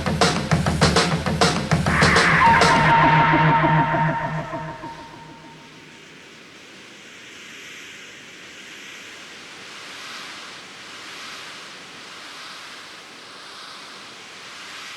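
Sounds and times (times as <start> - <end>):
wind rushing: 1.9 - 5.6.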